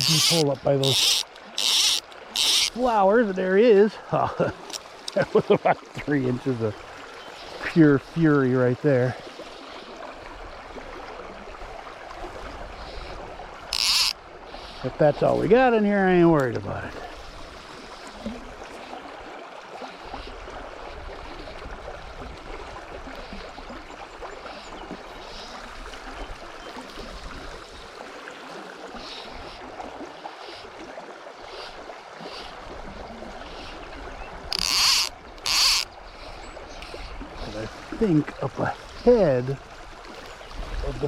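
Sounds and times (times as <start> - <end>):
creek water rushing: 0.0 - 41.0
wind rumbling on microphone: 20.2 - 28.0, 38.8 - 41.0.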